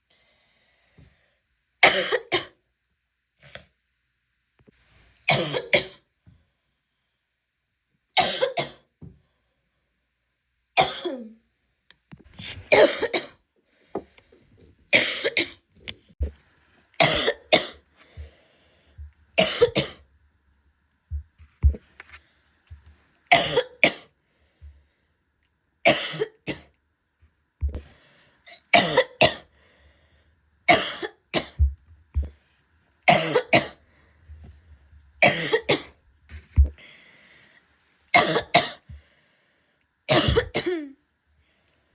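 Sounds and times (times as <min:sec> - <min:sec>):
woman coughing: 0:01.8 - 0:02.6, 0:05.3 - 0:06.0, 0:08.2 - 0:08.8, 0:10.8 - 0:11.4, 0:12.7 - 0:13.4, 0:14.9 - 0:15.6, 0:17.0 - 0:17.8, 0:19.4 - 0:20.0, 0:23.3 - 0:24.1, 0:25.9 - 0:26.7, 0:28.5 - 0:29.5, 0:30.7 - 0:31.7, 0:33.1 - 0:33.8, 0:35.2 - 0:35.9, 0:38.2 - 0:38.9, 0:40.1 - 0:41.0.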